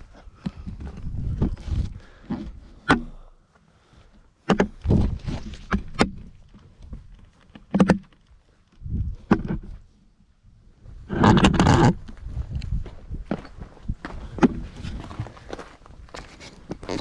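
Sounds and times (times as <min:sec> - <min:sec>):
footsteps on a trail: 0:12.0 - 0:17.0.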